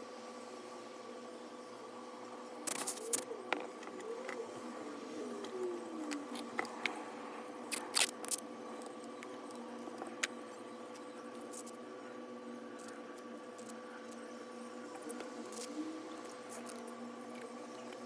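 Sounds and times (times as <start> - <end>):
steady electrical hum: 0.0 - 18.0
hand tool clicks and scrapes: 2.7 - 3.2, 7.7 - 8.4.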